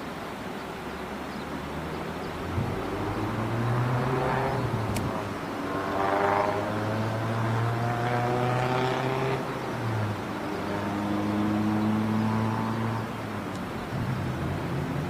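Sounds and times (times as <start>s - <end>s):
engine drone: 1.6s - 15.0s
sharp click: 4.9s - 5.1s.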